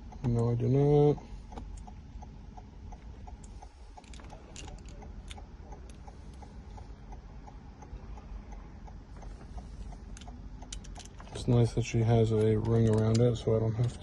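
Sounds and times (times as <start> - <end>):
steady light ticking: 0.0 - 14.0
sharp clicks: 12.3 - 14.0.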